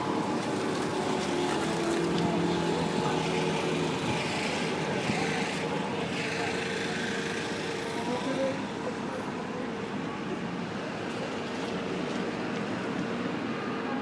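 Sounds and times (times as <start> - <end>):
city street traffic: 0.0 - 14.0.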